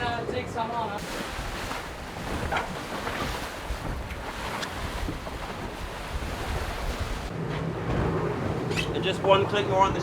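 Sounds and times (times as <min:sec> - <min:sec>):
faint water splashes: 0:01.0 - 0:07.3
water rushing past hull: 0:01.0 - 0:07.3
wind buffeting microphone: 0:01.0 - 0:07.3.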